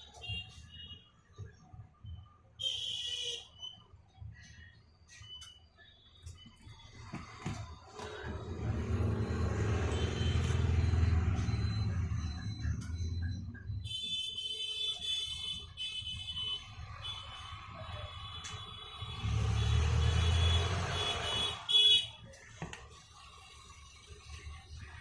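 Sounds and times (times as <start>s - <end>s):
high electronic tone: 8.3s - 14.1s.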